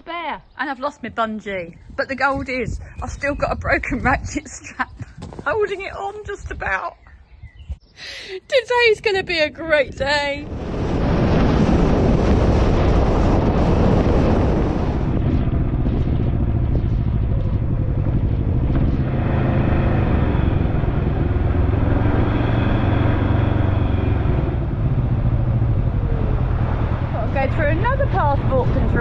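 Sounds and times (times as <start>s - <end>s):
wind buffeting microphone: 0.0s - 29.0s
motorcycle engine running: 15.2s - 29.0s.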